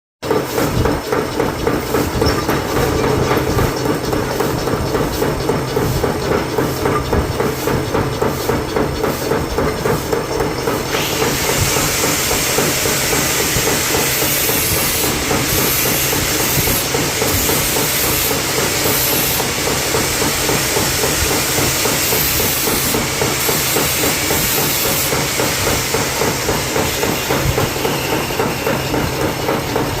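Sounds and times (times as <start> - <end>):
milling machine cutting: 0.6 - 30.0
loud hiss: 10.9 - 27.9.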